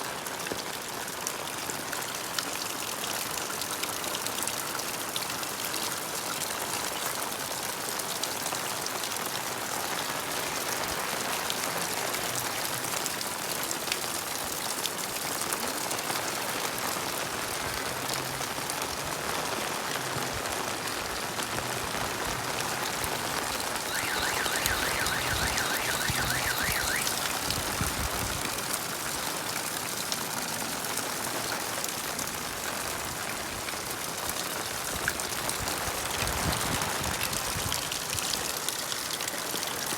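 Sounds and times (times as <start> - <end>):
steady rain: 0.1 - 39.9
rapid high pulsing sound: 23.9 - 27.5.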